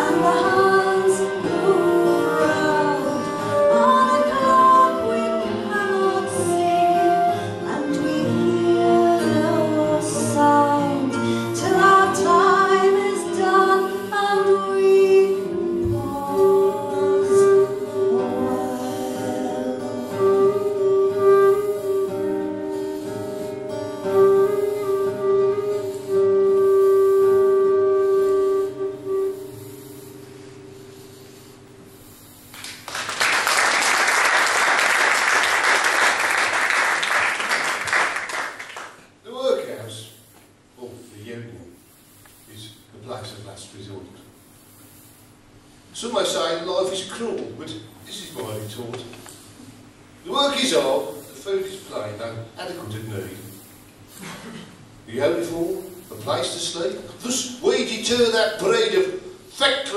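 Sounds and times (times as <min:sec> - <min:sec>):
folk singing with instruments: 0:00.0 - 0:22.8
audience applauding: 0:32.5 - 0:39.2.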